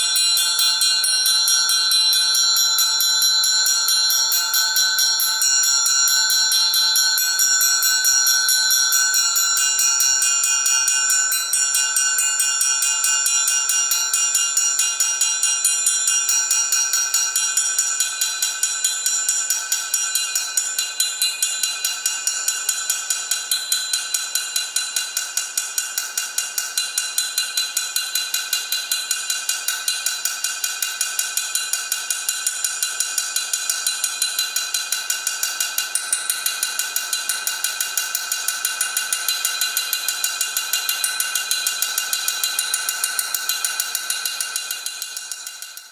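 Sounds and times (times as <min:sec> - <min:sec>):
triangle tremolo ringing: 0:00.0 - 0:17.6.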